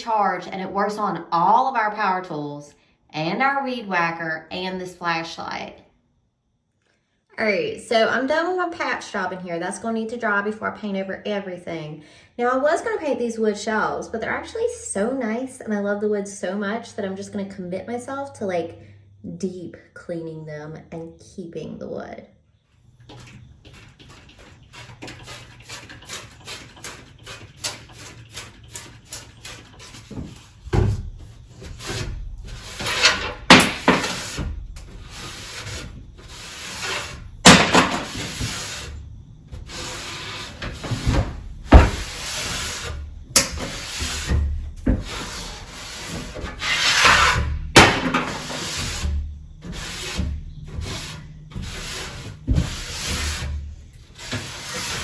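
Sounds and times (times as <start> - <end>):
scrubbing wooden shelves: 23.1 - 55.0.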